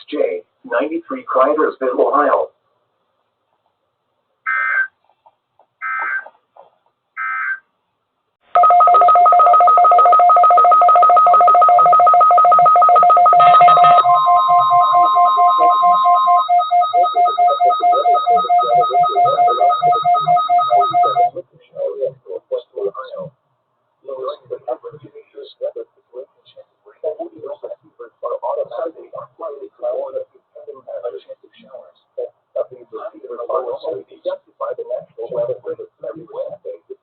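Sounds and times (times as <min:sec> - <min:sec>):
electronic data bursts: 0:08.6 - 0:21.3.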